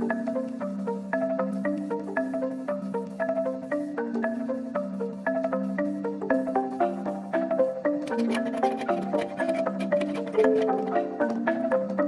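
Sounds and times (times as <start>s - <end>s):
bright struck notes melody: 6.4s - 11.7s
low sustained tone: 7.1s - 12.0s.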